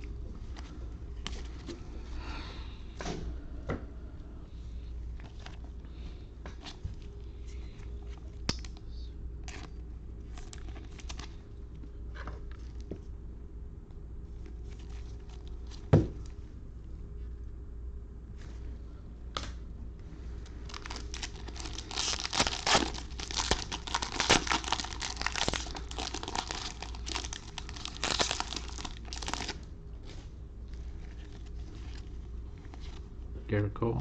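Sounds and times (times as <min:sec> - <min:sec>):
cards and wrappers rustling: 0:09.4 - 0:11.4, 0:20.4 - 0:33.1.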